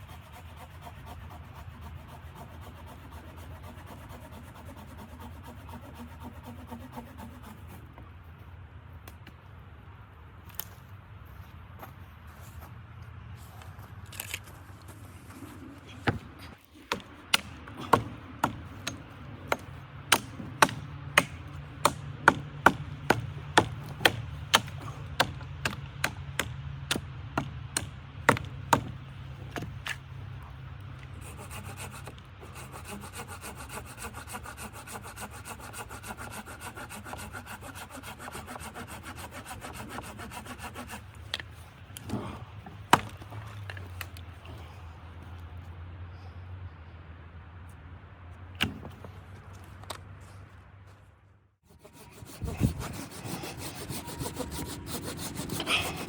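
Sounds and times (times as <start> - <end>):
hand tool strokes on wood: 31.2 - 42.3, 51.6 - 56.0.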